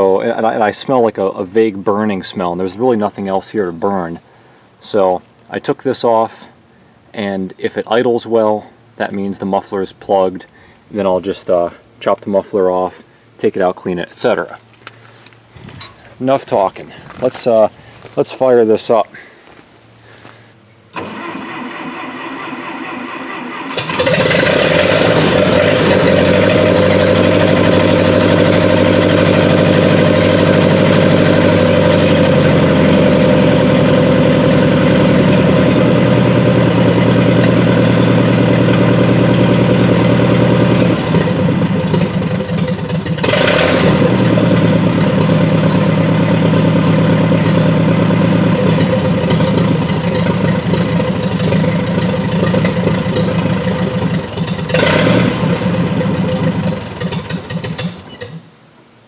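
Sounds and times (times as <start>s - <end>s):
engine starter cranking: 20.9s - 58.5s
tractor engine running loud: 21.0s - 58.2s.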